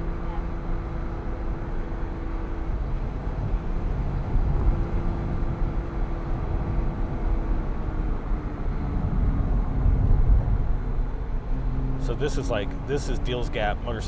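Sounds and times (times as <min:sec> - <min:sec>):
low road rumble: 0:00.0 - 0:14.0
car engine cruising: 0:07.5 - 0:14.0.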